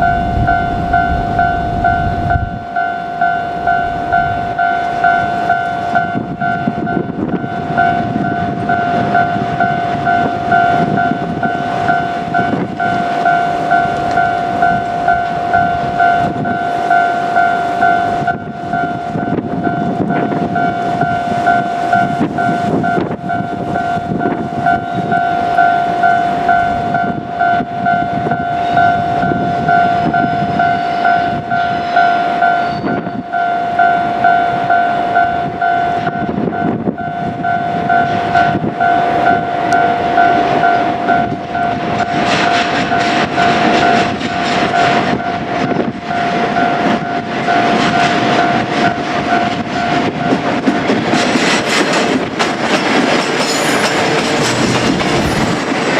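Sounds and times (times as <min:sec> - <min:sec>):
level crossing warning bell: 0:00.0 - 0:55.9
train wheels clattering over rails: 0:39.8 - 0:55.9.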